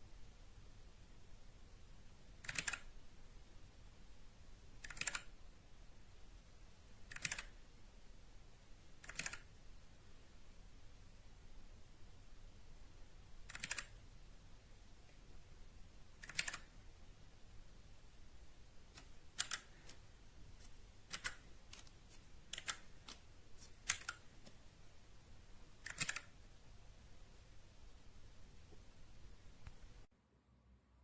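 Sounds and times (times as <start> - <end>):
mechanical keyboard clicks: 2.4 - 2.9, 4.8 - 5.4, 7.1 - 7.6, 9.0 - 9.5, 13.5 - 14.0, 16.2 - 16.7, 19.0 - 20.0, 21.1 - 21.9, 22.5 - 23.2, 23.8 - 24.3, 25.8 - 26.4.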